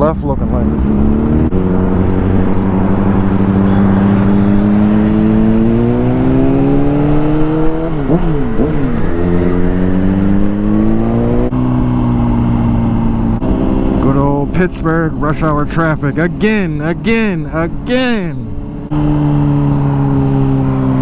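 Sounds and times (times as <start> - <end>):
motorcycle engine accelerating: 0.0 - 21.0
wind and road noise: 0.0 - 21.0.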